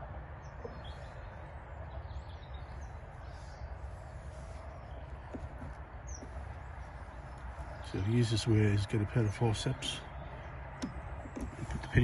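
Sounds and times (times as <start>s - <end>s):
faint bird chirps: 0.3s - 8.4s.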